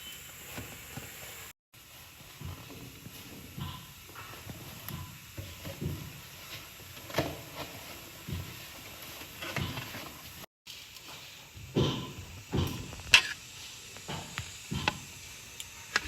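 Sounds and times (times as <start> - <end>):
kitchen utensils knocking and clattering: 2.4 - 10.4, 11.6 - 13.4.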